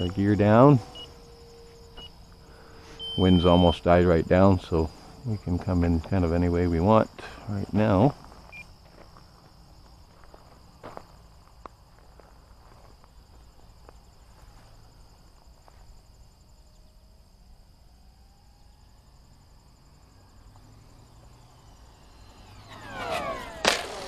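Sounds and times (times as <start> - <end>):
faint tone rising and falling: 0.0 - 5.5, 16.6 - 24.0
crickets chirring: 0.0 - 24.0.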